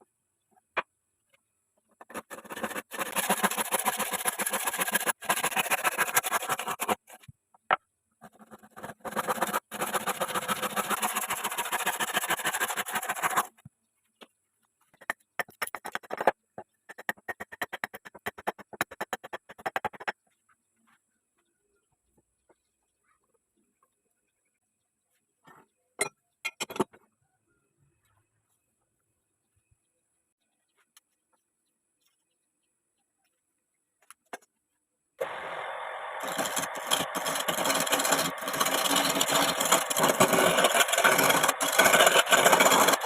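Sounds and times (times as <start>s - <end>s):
chisel scraping spinning wood: 2.0s - 7.3s, 8.2s - 13.6s, 36.2s - 43.0s.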